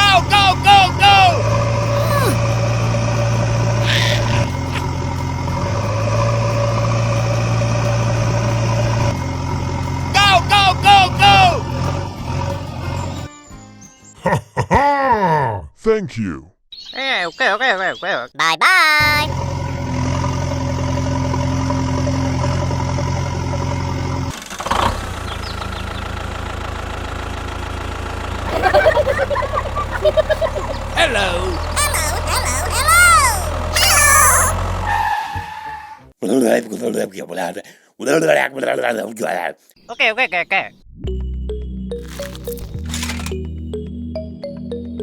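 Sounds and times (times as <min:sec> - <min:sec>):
model tractor engine hum: 0:00.0 - 0:13.2, 0:19.3 - 0:34.9, 0:42.0 - 0:43.3.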